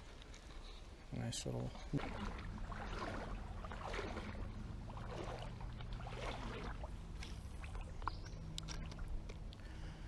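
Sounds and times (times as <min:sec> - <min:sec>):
creek water sloshing: 0:01.5 - 0:09.7
steady low rumble: 0:01.9 - 0:10.0.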